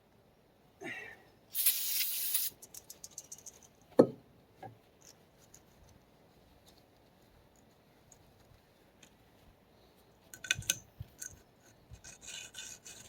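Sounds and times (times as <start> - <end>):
air hiss: 1.5 - 2.6.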